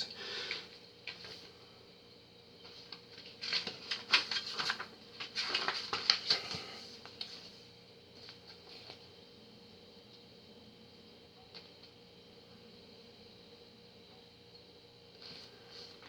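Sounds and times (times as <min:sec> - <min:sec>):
paper crinkling: 0:02.6 - 0:07.4.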